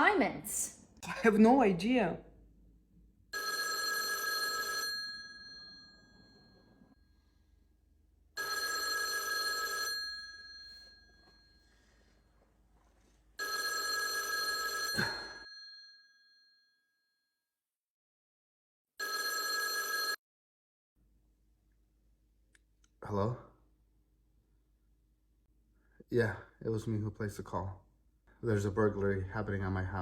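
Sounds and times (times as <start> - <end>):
telephone ringing: 3.3 - 7.6, 8.3 - 12.3, 13.4 - 16.8, 19.0 - 20.2.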